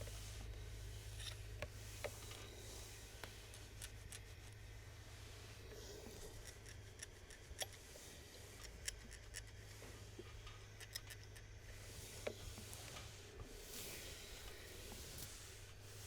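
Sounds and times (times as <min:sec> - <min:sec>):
steam iron hiss: 0:11.7 - 0:16.0
fabric rubbing: 0:11.8 - 0:16.0.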